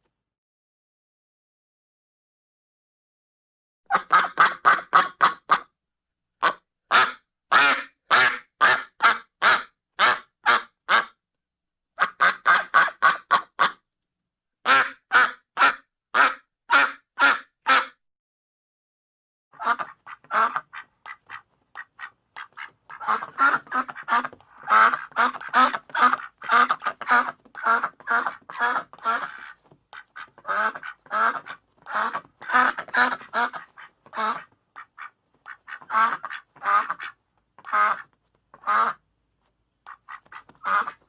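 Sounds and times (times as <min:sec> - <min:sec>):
ducks quacking: 0:19.6 - 0:39.0, 0:39.9 - 0:41.0.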